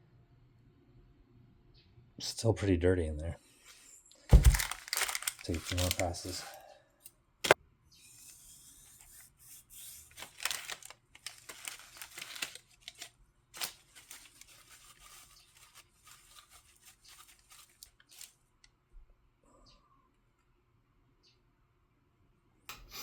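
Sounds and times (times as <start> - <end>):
paper towel wiping and crinkling: 3.6 - 6.6, 8.2 - 18.4.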